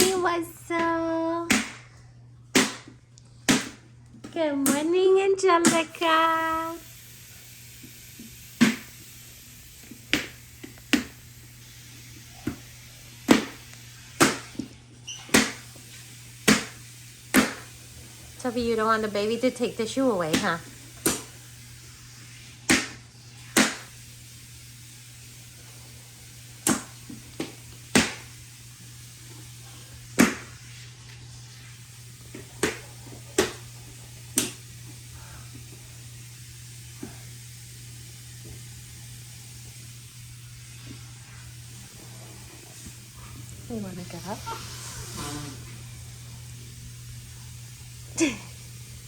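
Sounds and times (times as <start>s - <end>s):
faint steady hum: 0.0s - 49.0s
sharp slaps or knocks: 1.5s - 1.9s, 2.5s - 3.8s, 13.3s - 13.6s, 14.2s - 14.6s, 15.3s - 15.6s, 16.4s - 17.7s, 20.3s - 21.3s, 22.7s - 23.0s, 23.6s - 23.9s, 26.6s - 28.3s, 30.2s - 30.5s, 32.6s - 33.6s.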